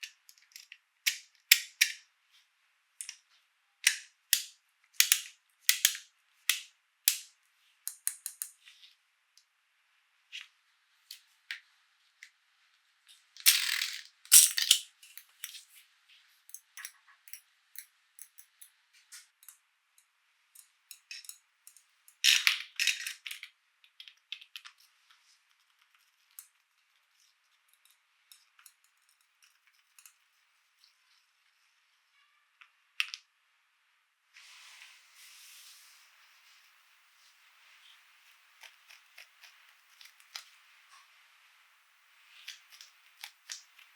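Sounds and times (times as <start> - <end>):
plastic toy pieces clicking: 3.9 - 7.3, 7.9 - 8.6, 13.4 - 15.6.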